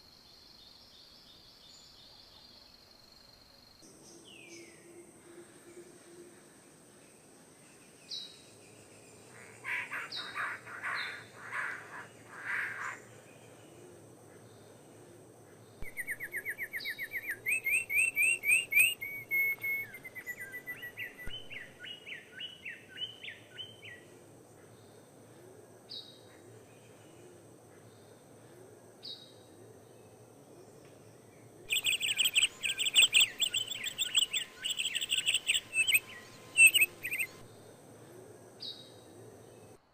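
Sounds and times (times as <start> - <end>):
bird harsh chattering calls: 9.4 - 13.0, 31.7 - 37.4
short high bird chirps: 31.7 - 37.3
bird fast trill: 31.7 - 37.4.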